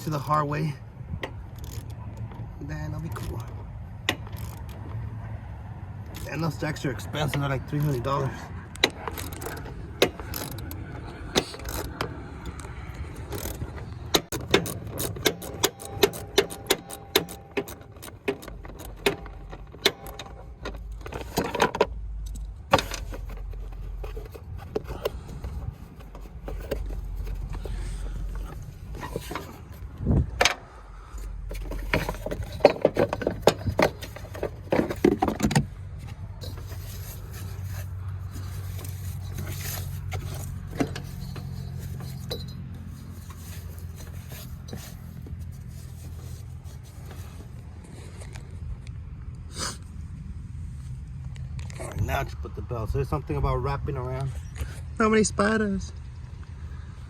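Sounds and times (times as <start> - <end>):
tools clinking and scraping on metal: 6.0 - 48.1.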